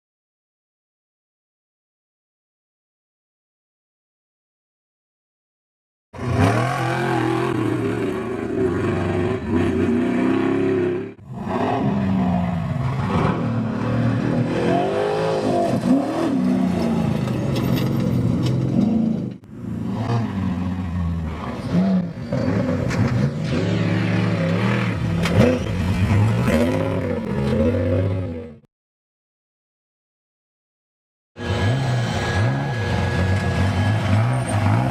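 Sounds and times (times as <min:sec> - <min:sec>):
truck engines revving: 0:06.2 - 0:28.6, 0:31.4 - 0:34.9.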